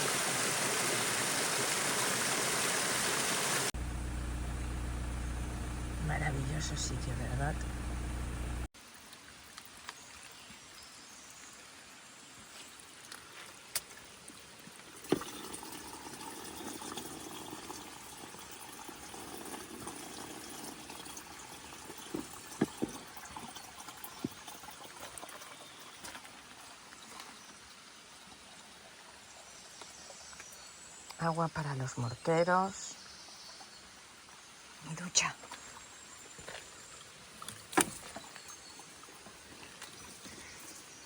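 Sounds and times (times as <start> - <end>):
spring water trickling: 0.0 - 10.4, 12.7 - 29.4.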